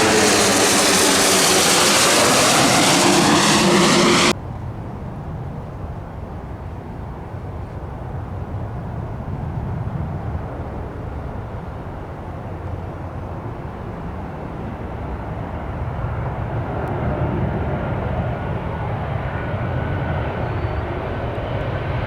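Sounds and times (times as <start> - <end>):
jet engine noise: 0.0 - 4.4, 9.2 - 22.0
faint engine whine: 0.0 - 4.7, 10.4 - 22.0.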